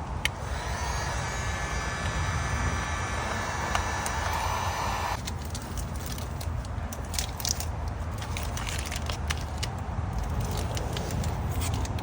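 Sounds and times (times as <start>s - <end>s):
heat gun fan whine: 0.0s - 5.3s
heat gun switch clicking: 0.2s - 5.1s
rush of hot air: 0.3s - 5.2s.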